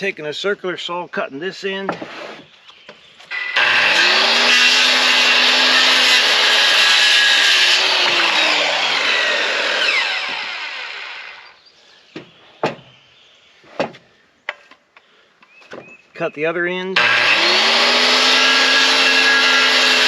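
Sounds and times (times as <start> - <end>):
circular saw cutting wood: 3.3 - 11.6, 17.0 - 20.0
knocks: 12.2 - 12.9.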